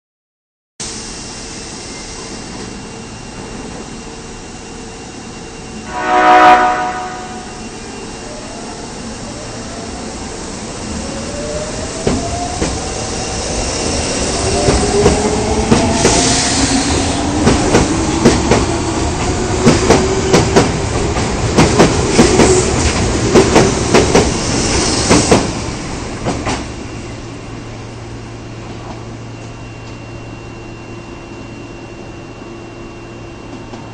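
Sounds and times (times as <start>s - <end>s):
train horn blast: 5.8s - 7.6s.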